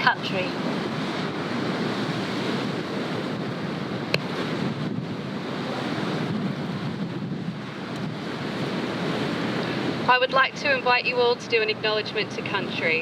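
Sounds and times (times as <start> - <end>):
ocean surf washing on beach: 0.0 - 13.0
wind buffeting microphone: 0.0 - 13.0.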